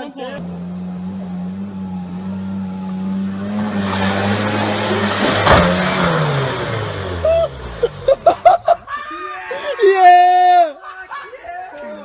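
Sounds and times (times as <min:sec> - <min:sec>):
snowmobile engine running: 0:00.4 - 0:08.8
sharp thump: 0:05.2 - 0:06.3.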